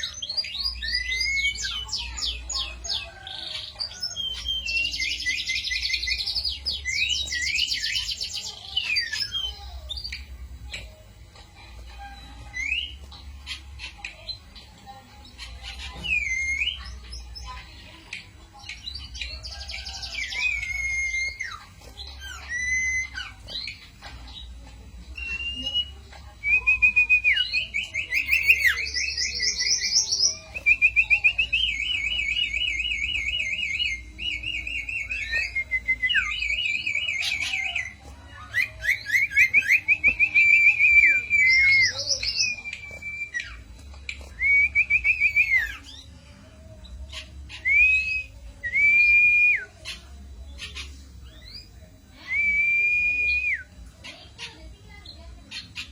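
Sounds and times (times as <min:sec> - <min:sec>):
songbird singing: 0:11.6 - 0:55.9.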